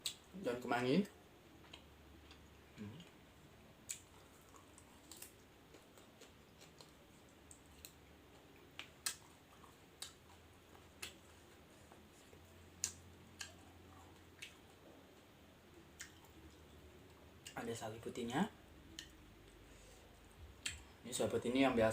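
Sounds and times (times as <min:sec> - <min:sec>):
faint sharp clicks and crackles: 0:03.8 - 0:15.3.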